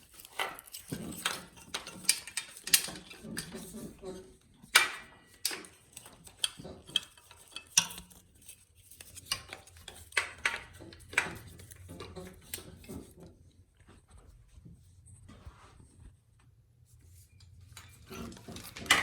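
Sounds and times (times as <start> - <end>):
metal tools clinking: 0.0 - 4.0.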